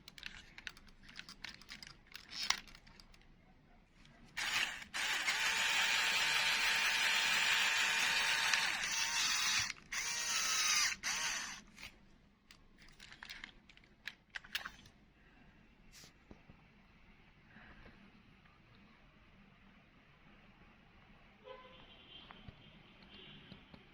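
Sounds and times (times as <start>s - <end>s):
toy electric motor whine: 4.4s - 11.9s.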